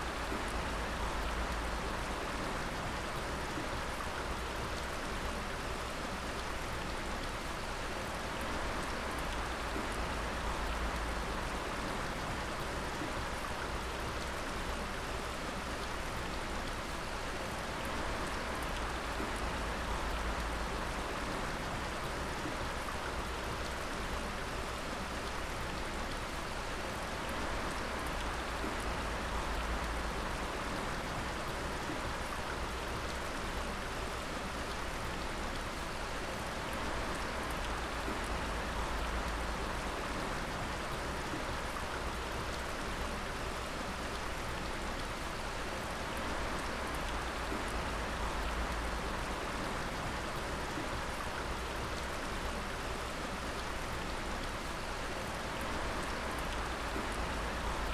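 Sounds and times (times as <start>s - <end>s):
water dripping and splashing: 8.4s - 57.9s.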